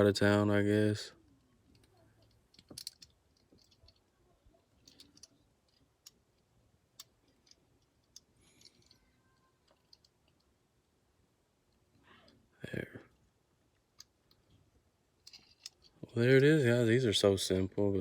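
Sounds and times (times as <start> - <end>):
plastic parts clicking and tapping: 1.7 - 4.1, 4.7 - 10.5, 15.2 - 16.5.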